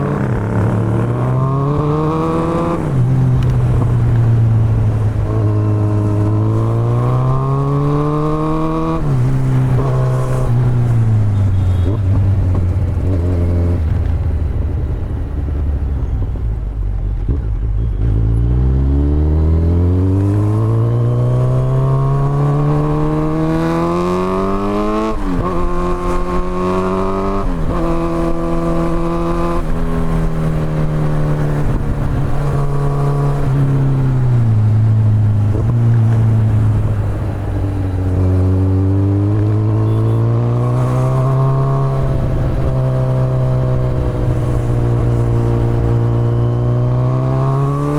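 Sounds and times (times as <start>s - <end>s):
motorcycle engine revving: 0.0s - 14.6s, 17.2s - 47.9s.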